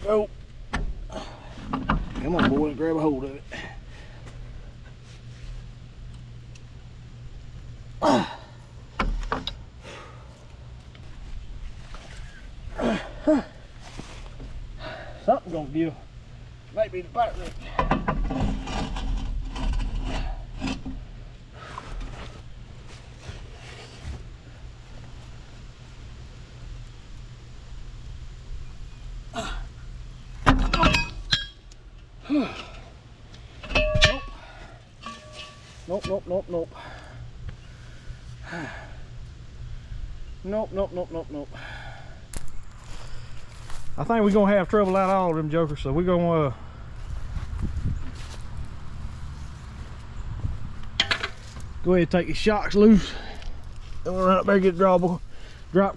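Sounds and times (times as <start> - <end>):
steady low hum: 0.0 - 55.9
man grunting with effort: 8.0 - 8.6, 12.7 - 13.7, 29.3 - 29.8, 32.2 - 32.9
metal clinks: 30.6 - 31.7, 33.6 - 35.7
wrench and socket clanking: 33.6 - 35.6.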